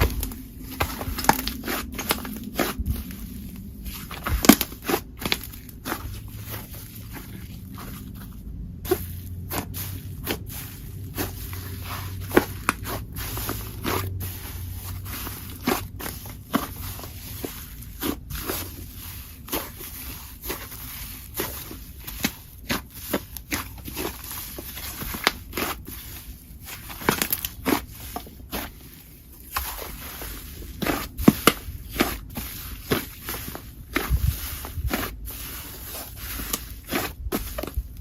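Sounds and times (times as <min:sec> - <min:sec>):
hands squishing slime: 0:00.0 - 0:38.0.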